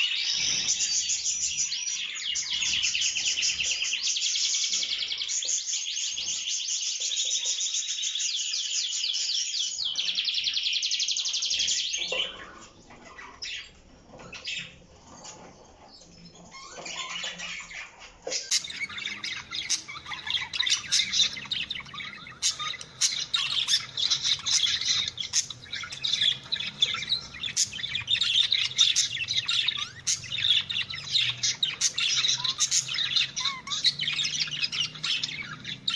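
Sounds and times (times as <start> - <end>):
canary trilling song: 0.0 - 35.9
bird chirps: 8.2 - 35.9.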